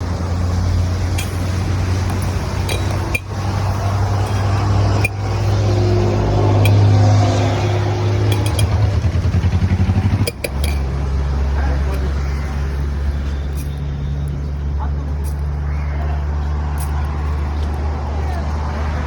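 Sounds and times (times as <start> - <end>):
metal utensils clinking: 1.1 - 5.6, 6.5 - 7.0, 8.2 - 11.1.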